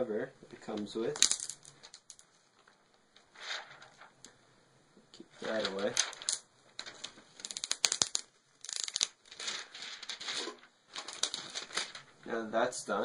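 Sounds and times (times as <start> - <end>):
plastic film crinkling: 0.7 - 4.2, 5.3 - 12.2.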